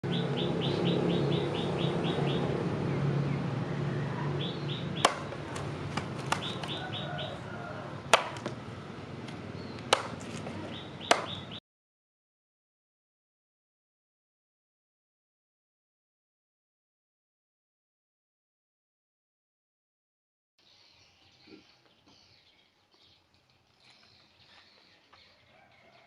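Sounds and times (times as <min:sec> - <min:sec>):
birds chirping: 0:00.0 - 0:11.6, 0:20.6 - 0:26.0
hammer blows: 0:05.0 - 0:06.8, 0:09.3 - 0:11.5.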